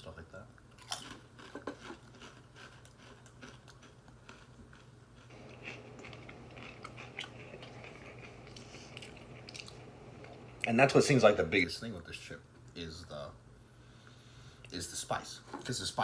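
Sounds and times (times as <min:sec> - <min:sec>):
low steady hum: 0:00.0 - 0:16.0
crisps crunching while chewing: 0:00.6 - 0:10.7.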